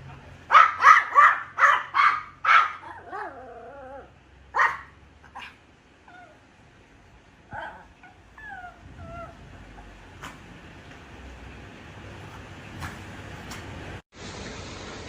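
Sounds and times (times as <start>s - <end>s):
dog barking: 0.5s - 3.4s, 4.5s - 5.6s, 7.5s - 7.9s
dog whining: 5.4s - 6.4s, 7.5s - 10.0s.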